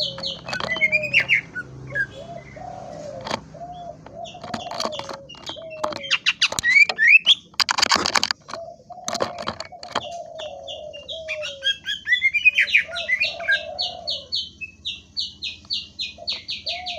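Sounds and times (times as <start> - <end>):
bird singing chirps and whistles: 0.0 - 2.6, 4.2 - 7.5, 10.0 - 16.9.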